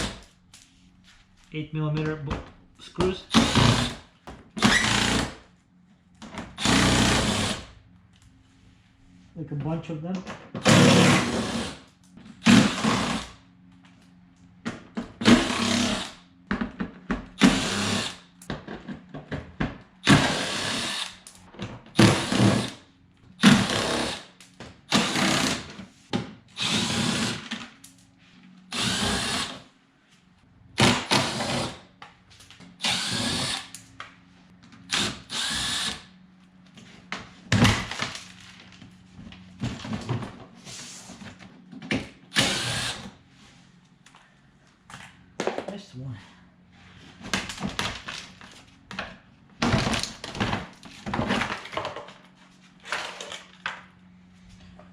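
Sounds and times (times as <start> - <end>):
power drill driving out screws: 4.6 - 5.4, 10.6 - 11.8, 15.2 - 16.2, 20.0 - 21.2, 22.0 - 22.8, 26.6 - 27.7, 28.7 - 29.6, 30.8 - 31.8, 32.8 - 33.7, 34.9 - 36.1, 42.3 - 43.2.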